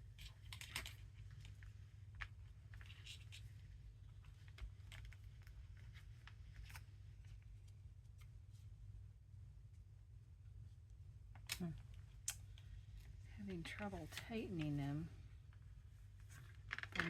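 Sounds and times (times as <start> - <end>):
paper and thread rustling: 0.0 - 8.8
low steady hum: 0.0 - 17.0.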